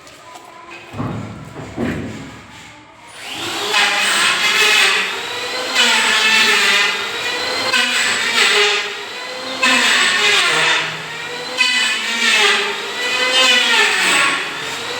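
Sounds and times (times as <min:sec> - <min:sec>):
knocks: 0:00.9 - 0:02.5
power tool whining: 0:03.1 - 0:14.9.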